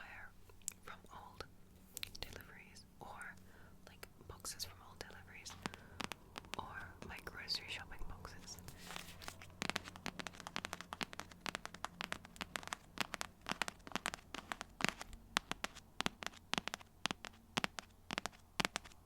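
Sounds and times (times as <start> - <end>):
fingernails tapping on cardboard: 9.5 - 19.0.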